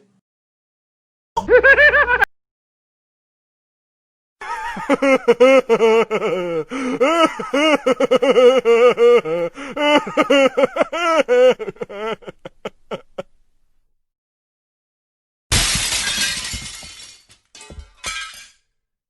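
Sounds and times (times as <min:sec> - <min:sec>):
high-pitched pulsing laugh: 0:01.4 - 0:02.3.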